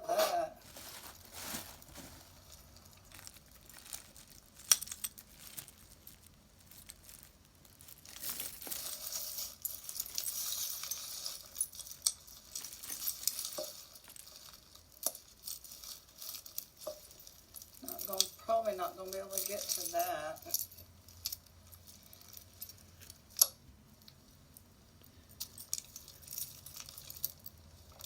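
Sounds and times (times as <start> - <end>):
packaging crinkling: 0.1 - 17.3
jewelry pieces clinking: 2.5 - 23.6, 25.2 - 28.0.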